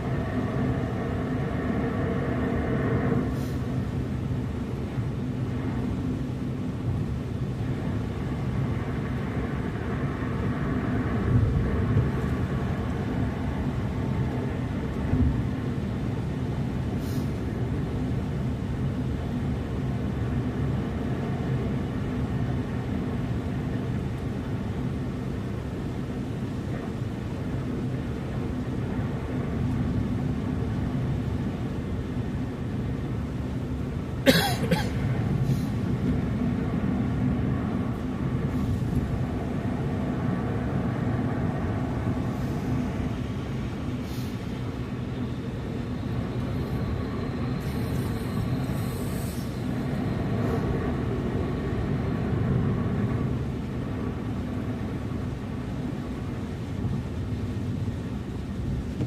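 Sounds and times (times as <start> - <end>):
car engine and tyres rumbling: 0.0 - 59.0
short hiss: 17.0 - 17.4, 44.0 - 44.5.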